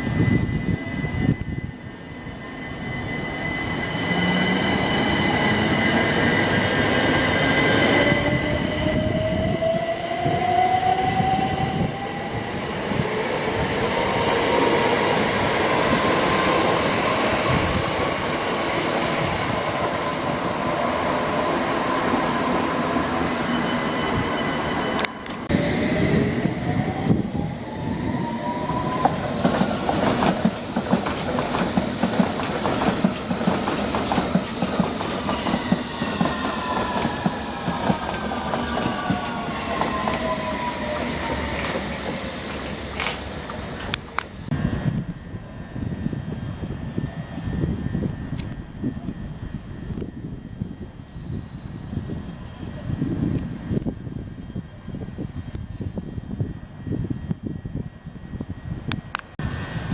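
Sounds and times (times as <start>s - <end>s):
wheel and rail noise: 0.0s - 45.9s
train motors whining: 19.2s - 45.2s.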